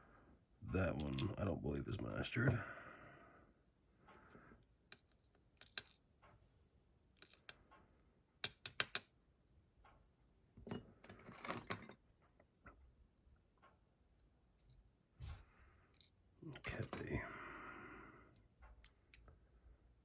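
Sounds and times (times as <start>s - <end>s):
small metal parts clinking: 5.6s - 6.1s, 7.2s - 7.6s, 10.7s - 12.0s, 15.9s - 17.2s.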